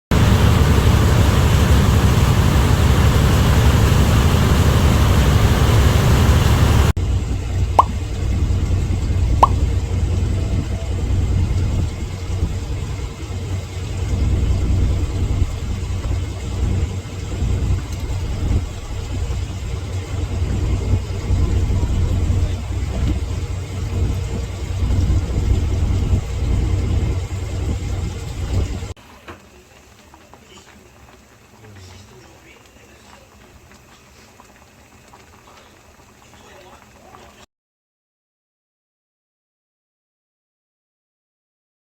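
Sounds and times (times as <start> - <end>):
engine rumbling: 0.0 - 29.0.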